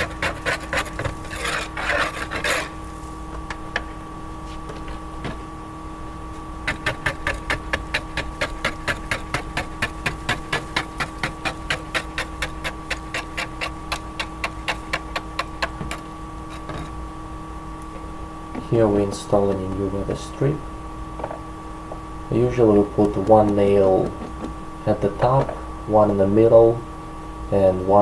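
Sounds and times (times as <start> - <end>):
hand scraper scraping stucco: 0.0 - 2.8, 6.6 - 16.9.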